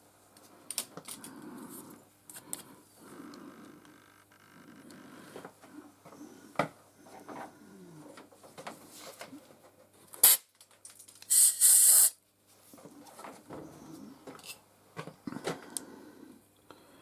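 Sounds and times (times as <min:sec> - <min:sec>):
spray hissing burst: 0:11.3 - 0:12.2.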